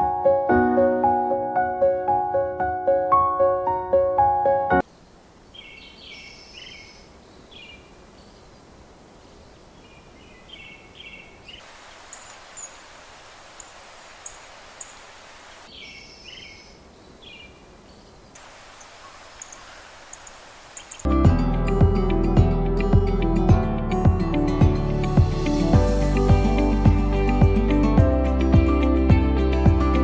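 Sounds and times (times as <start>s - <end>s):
birds twittering: 4.8s - 21.1s
outdoor background hiss: 4.8s - 21.1s.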